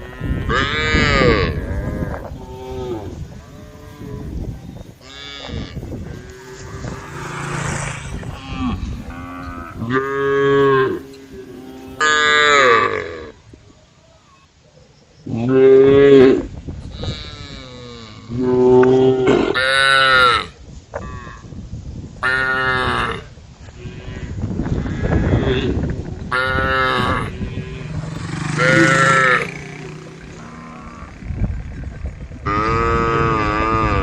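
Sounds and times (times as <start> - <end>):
cows mooing: 0.0 - 13.4, 22.3 - 34.0.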